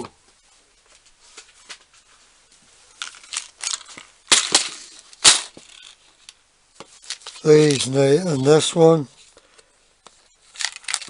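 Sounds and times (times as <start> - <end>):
metal fittings rustling: 2.9 - 9.4, 10.1 - 11.0.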